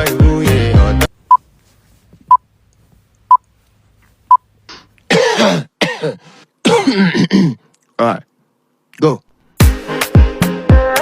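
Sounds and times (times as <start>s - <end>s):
person coughing: 5.1s - 7.7s.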